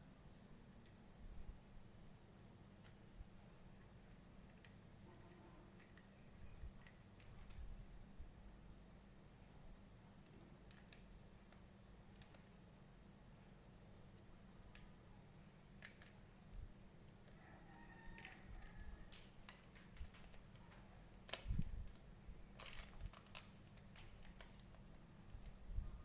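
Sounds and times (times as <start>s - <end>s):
plastic toy pieces clicking: 15.7s - 16.2s, 19.1s - 22.0s, 22.6s - 25.0s.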